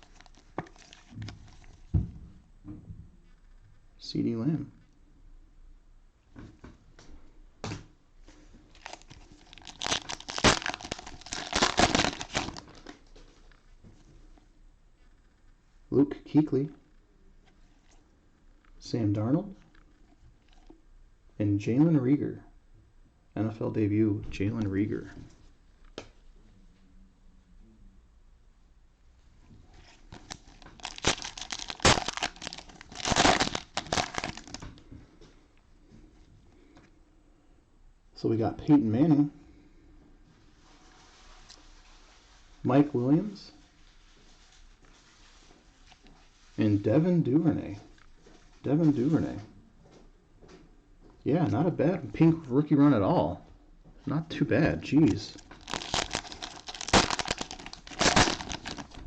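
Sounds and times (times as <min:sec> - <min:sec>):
cellophane wrapper crinkling and tearing: 0:00.0 - 0:01.9, 0:08.7 - 0:13.1, 0:29.8 - 0:34.8, 0:55.0 - 0:59.0.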